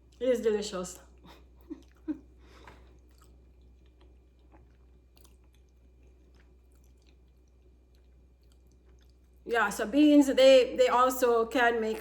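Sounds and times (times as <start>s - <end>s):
low steady hum: 0.0s - 12.0s
person chewing food: 1.0s - 9.5s.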